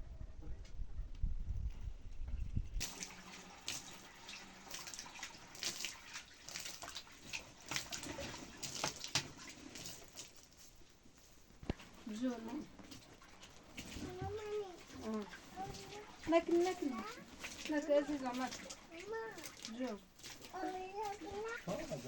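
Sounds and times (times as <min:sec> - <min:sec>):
low rumble: 0:00.0 - 0:02.8
water splashing and sloshing: 0:02.6 - 0:22.0
water dripping: 0:02.8 - 0:22.0.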